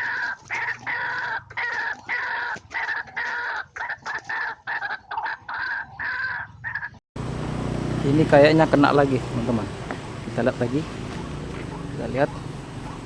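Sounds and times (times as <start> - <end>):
waterhen harsh call: 0.0 - 6.8.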